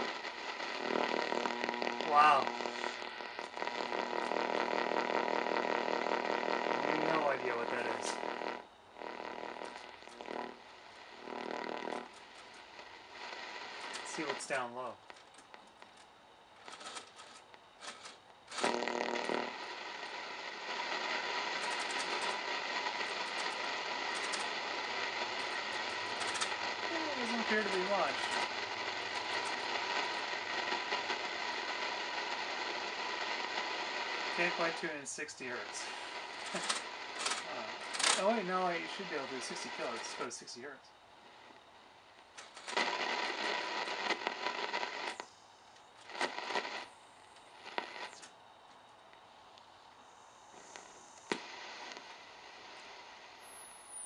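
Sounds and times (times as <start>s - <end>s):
radio crackles: 0.0s - 54.0s
radio static hiss: 0.0s - 54.0s
faint whistle tones: 53.4s - 54.0s.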